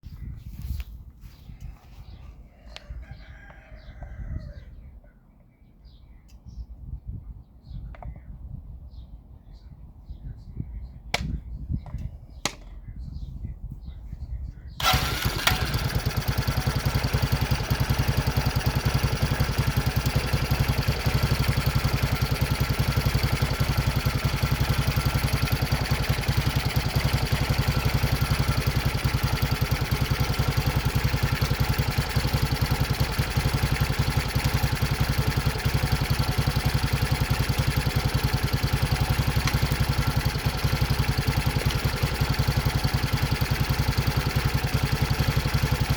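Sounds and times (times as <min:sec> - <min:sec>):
motorcycle engine idling: 0:14.8 - 0:45.9
motorcycle engine starting: 0:14.8 - 0:45.9.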